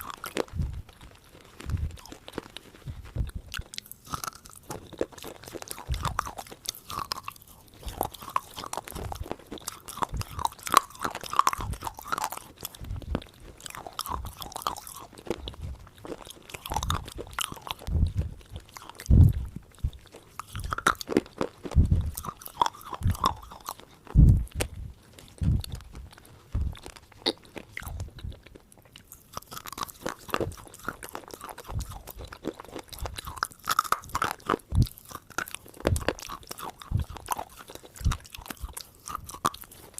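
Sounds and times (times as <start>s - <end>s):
chewing crunchy food: 0.0s - 39.9s
low thumps: 0.5s - 0.8s, 2.8s - 3.5s, 12.8s - 13.2s, 17.8s - 20.0s, 21.7s - 22.2s, 24.1s - 26.9s.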